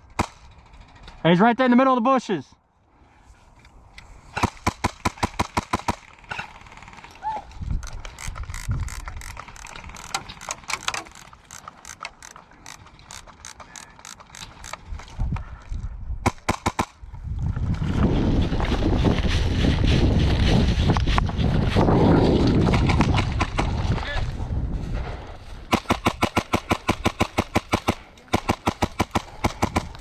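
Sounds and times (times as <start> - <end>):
wind noise on microphone: 7.2 - 10.2, 14.3 - 27.3
airsoft gun shots: 16.2 - 17.0, 25.7 - 30.0.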